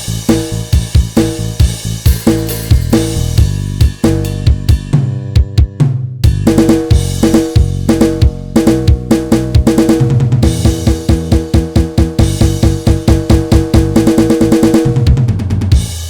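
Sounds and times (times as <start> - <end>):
sustained bass notes: 0.0 - 15.9
drum kit beat: 0.0 - 16.0.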